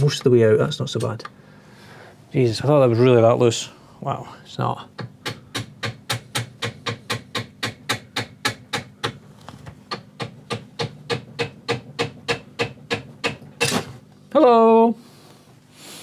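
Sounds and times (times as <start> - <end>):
small hammer tapping on metal: 5.0 - 9.2, 9.9 - 13.4.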